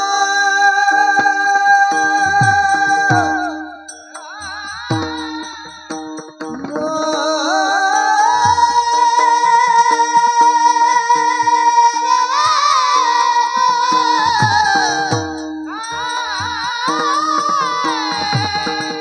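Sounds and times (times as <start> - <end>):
instrumental accompaniment: 0.0 - 19.0
drum strokes: 1.9 - 7.6
high voice singing held note: 7.0 - 19.0.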